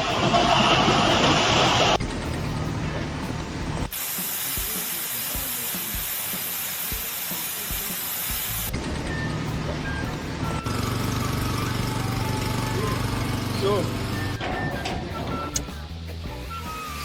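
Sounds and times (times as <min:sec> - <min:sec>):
loud even hiss: 0:00.0 - 0:02.8, 0:03.4 - 0:08.7
low engine hum: 0:00.0 - 0:03.9, 0:08.7 - 0:16.4.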